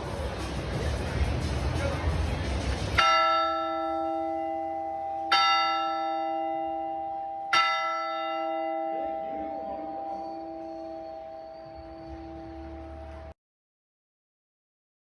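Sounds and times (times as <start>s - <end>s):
large bell ringing: 2.9s - 13.3s.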